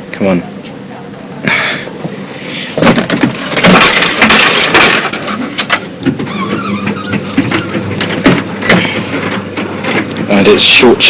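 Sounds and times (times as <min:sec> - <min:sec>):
vending machine rattling: 0:02.8 - 0:11.0.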